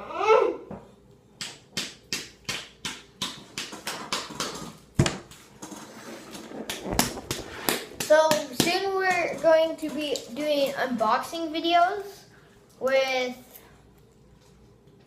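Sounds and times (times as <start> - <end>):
sharp hand slaps: 1.4 - 4.6.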